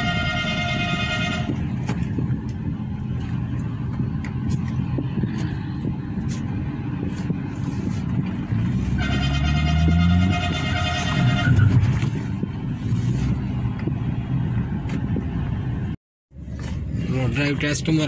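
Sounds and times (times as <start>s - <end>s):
vehicle horn: 0.0s - 1.8s, 8.7s - 12.0s
car engine and road noise: 0.0s - 18.0s.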